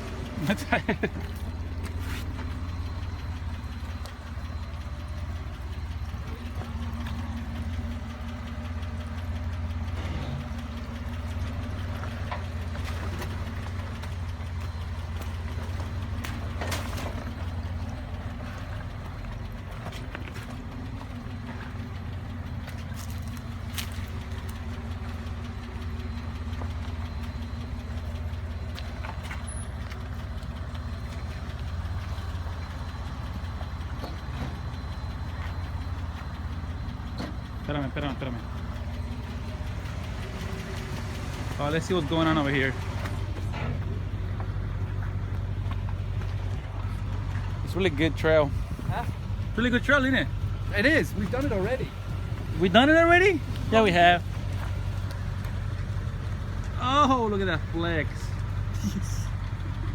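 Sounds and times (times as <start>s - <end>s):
off-road vehicle engine running: 0.0s - 59.9s.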